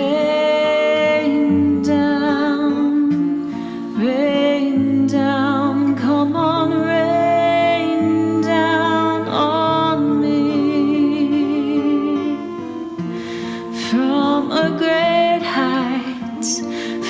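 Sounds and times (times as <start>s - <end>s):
choir singing long notes: 6.0s - 17.0s.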